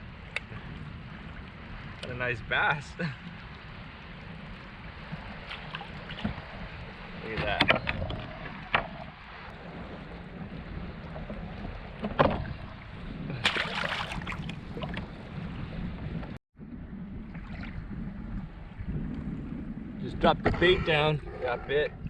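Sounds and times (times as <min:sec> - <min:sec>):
water sloshing around kayak: 0:00.0 - 0:16.0
wind buffeting microphone: 0:00.0 - 0:22.0
splashy rustle: 0:05.2 - 0:06.4, 0:13.4 - 0:14.9.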